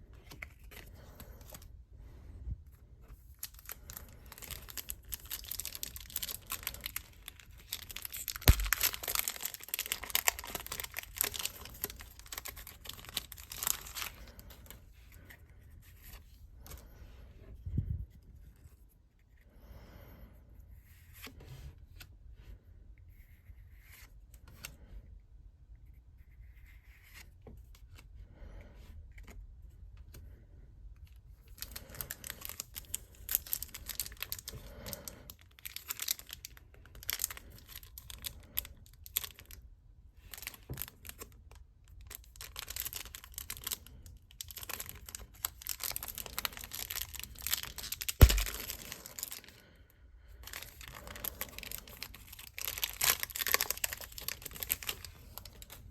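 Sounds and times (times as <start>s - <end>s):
card packaging crinkling and tearing: 3.1s - 14.7s, 31.5s - 39.6s, 40.2s - 41.3s, 42.0s - 49.6s, 50.4s - 55.9s.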